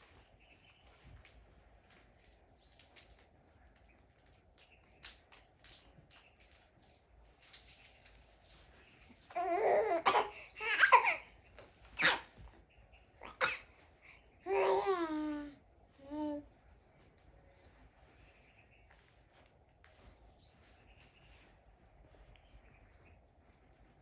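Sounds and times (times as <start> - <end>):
baby babbling and cooing: 9.3 - 11.3, 14.4 - 16.5.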